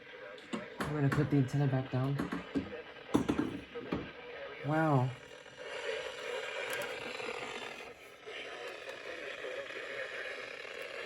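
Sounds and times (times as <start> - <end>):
weak radio broadcast: 0.0 - 6.4
radio static and hiss: 0.0 - 8.2.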